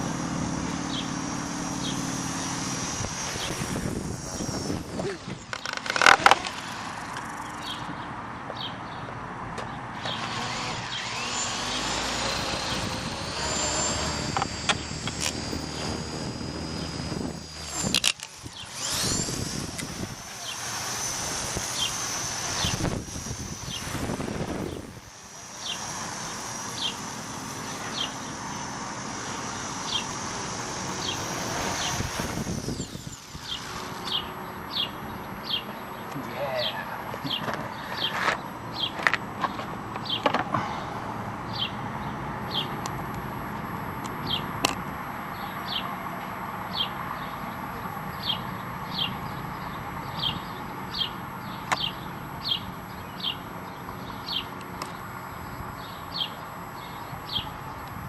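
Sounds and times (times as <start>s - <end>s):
model helicopter rotor whining: 0.0s - 8.0s, 9.9s - 58.0s
wind noise: 1.8s - 6.0s, 10.2s - 25.1s, 29.5s - 34.4s.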